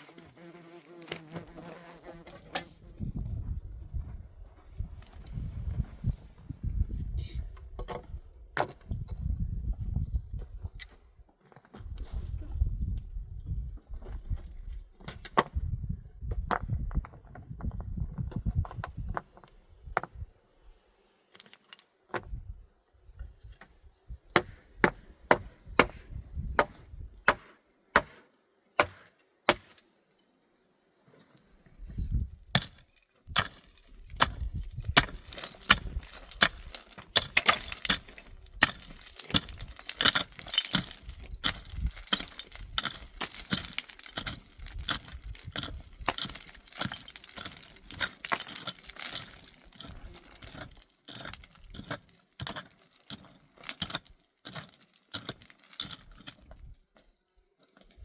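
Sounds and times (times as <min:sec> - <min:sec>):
hard objects clinking together: 0:32.6 - 0:56.4.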